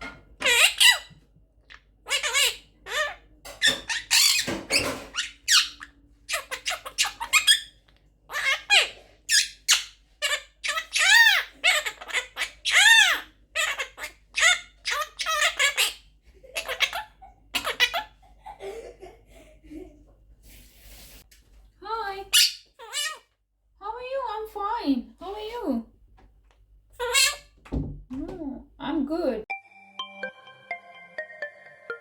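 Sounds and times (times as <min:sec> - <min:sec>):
parrot squeaky calls and chatter: 0:00.4 - 0:18.2, 0:22.3 - 0:23.3, 0:27.0 - 0:27.6.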